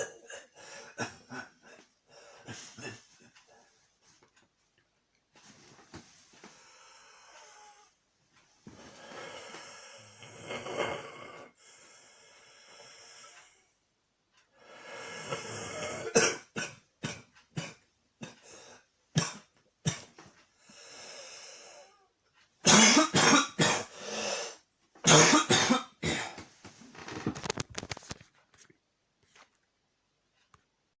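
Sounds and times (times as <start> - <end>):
noisy breathing: 6.3 - 8.0, 8.6 - 13.8, 14.5 - 15.8, 20.6 - 22.1
man coughing: 22.7 - 23.9, 25.1 - 26.4.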